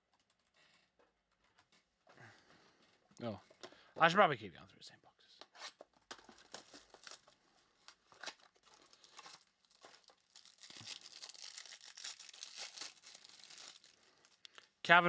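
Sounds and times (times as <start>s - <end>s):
wrapper tearing and crinkling: 6.1s - 14.5s.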